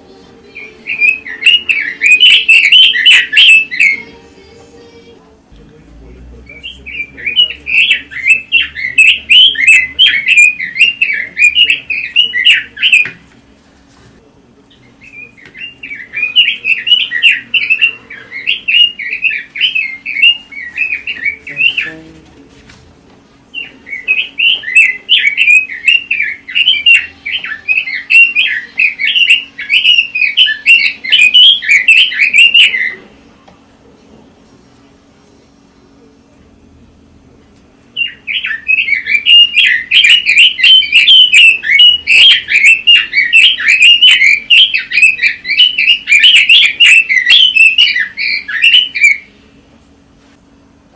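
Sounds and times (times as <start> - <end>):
bird fluty warbling: 0.0 - 4.3, 6.0 - 13.2, 14.7 - 22.2, 23.5 - 33.3, 37.9 - 49.6.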